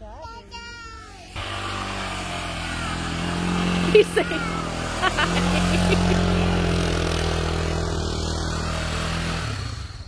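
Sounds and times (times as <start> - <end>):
vehicle engine running: 1.2 - 10.0.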